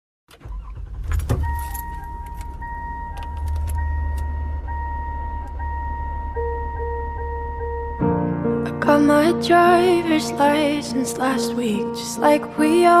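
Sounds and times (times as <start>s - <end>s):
low engine hum: 0.4s - 10.9s
car warning chime: 0.8s - 8.2s
sharp clicks: 1.1s - 4.3s.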